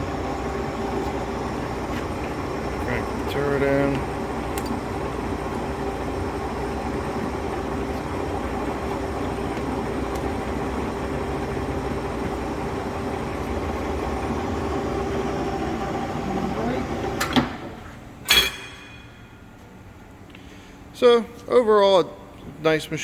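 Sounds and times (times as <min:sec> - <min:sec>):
lathe running with whine: 0:00.0 - 0:17.3.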